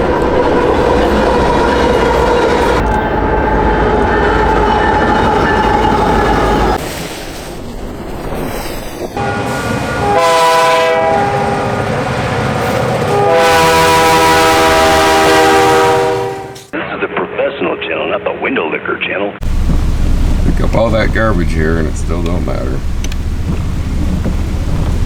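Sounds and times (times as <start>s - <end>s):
train wheels rumbling and clattering: 0.0s - 15.7s, 19.4s - 25.0s
locomotive air horn: 9.2s - 12.2s, 13.0s - 16.8s.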